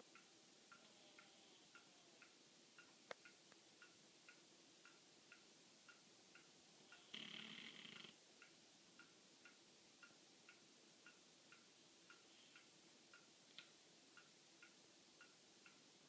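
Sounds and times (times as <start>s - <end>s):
dog snoring: 7.0s - 8.2s.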